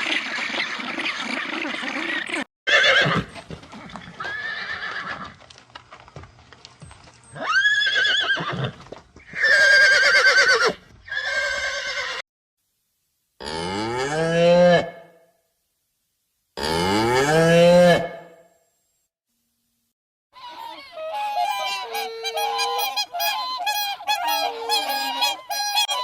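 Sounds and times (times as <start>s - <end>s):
horse neighing: 2.7s - 5.3s, 7.4s - 12.2s.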